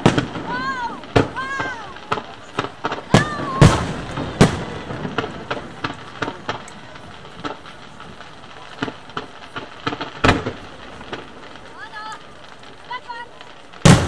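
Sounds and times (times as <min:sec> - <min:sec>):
firework pops and crackles: 0:00.0 - 0:14.0
firework shell bangs: 0:08.8 - 0:11.5.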